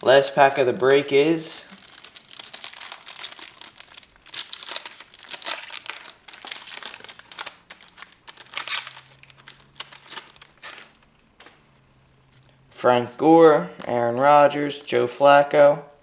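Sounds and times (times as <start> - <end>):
wrapper tearing and crinkling: 0.0 - 11.6.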